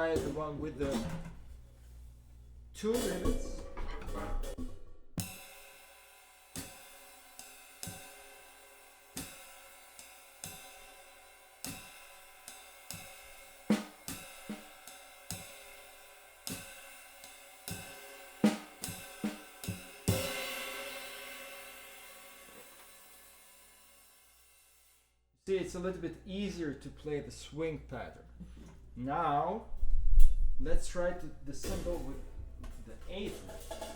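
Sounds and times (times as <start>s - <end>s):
drum hits: 0.0s - 1.5s, 2.8s - 5.6s, 17.8s - 22.9s, 31.0s - 33.9s
ride cymbal swing pattern: 0.0s - 4.6s, 5.2s - 25.0s.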